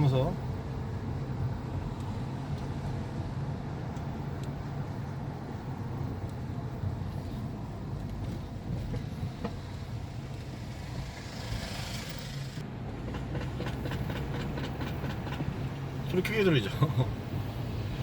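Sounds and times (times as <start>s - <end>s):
road and drivetrain hum: 0.0s - 18.0s
rapid clicking from car joint: 11.0s - 15.8s.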